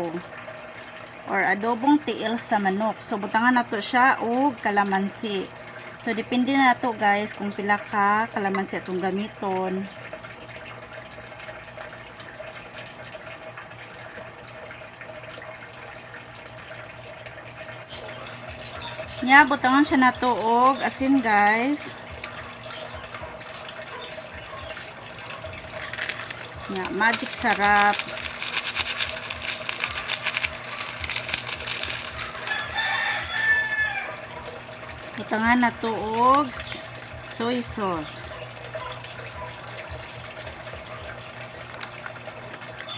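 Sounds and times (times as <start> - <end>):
low steady hum: 0.0 - 42.9
rapid crackling rustles: 25.7 - 32.8
rooster crowing: 32.3 - 34.2.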